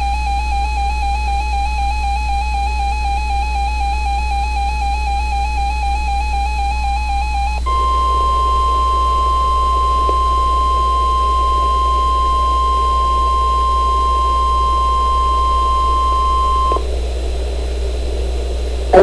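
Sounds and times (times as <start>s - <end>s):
loud steady alarm tone: 7.7s - 17.5s
light radio static: 7.7s - 19.0s
low hum: 7.7s - 19.0s.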